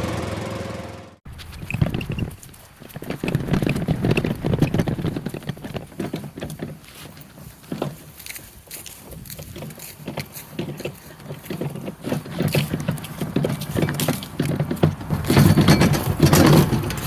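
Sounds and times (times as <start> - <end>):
footsteps on ground: 1.3 - 17.0
rustling and handling noise: 1.3 - 17.0.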